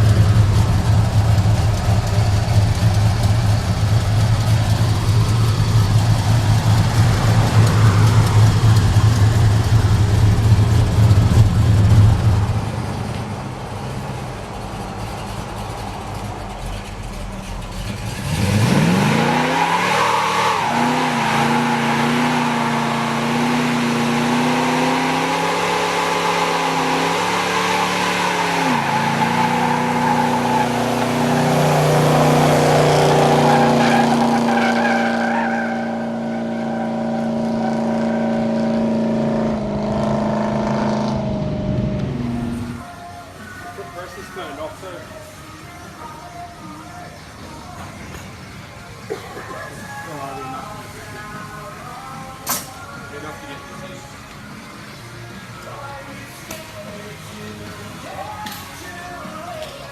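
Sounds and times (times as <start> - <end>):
car engine revving: 0.0 - 42.8
car engines rumbling: 0.0 - 46.2, 46.8 - 59.9.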